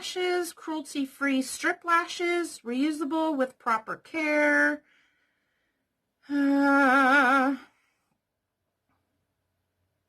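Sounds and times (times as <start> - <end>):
woman humming: 6.2 - 7.7.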